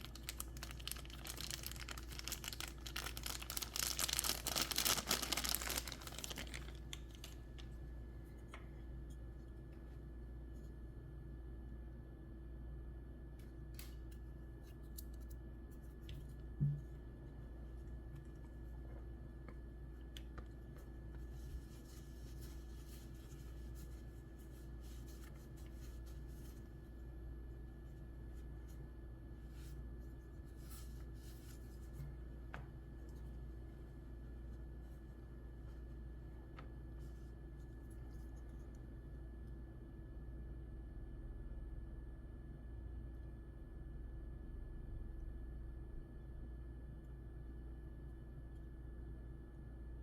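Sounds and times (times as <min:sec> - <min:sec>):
packaging crinkling and tearing: 0:00.0 - 0:07.8
steady low hum: 0:00.0 - 0:50.0
soft rustling and rubbing: 0:20.4 - 0:39.0.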